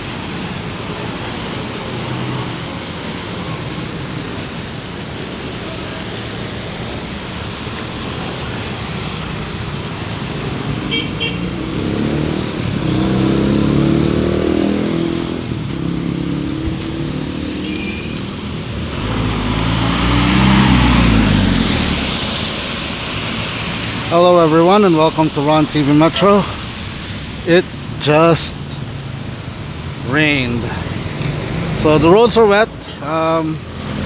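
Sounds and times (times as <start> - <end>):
cars and motorcycles passing: 0.0 - 34.0
tyre hiss on wet road: 17.1 - 27.5.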